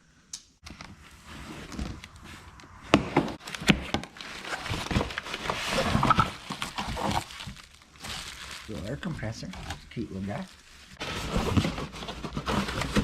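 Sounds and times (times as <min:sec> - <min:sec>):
packaging rustling: 0:03.4 - 0:13.0.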